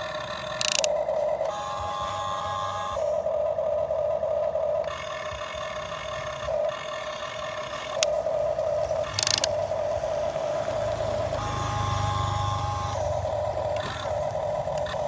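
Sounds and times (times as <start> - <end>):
model excavator motor whining: 0.0 - 15.0
sharp click: 0.5 - 1.0.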